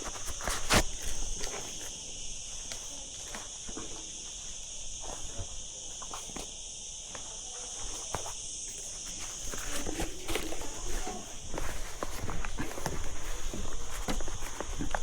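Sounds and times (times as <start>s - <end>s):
footsteps: 2.6s - 15.0s
twigs and leaves crackling: 8.1s - 15.0s.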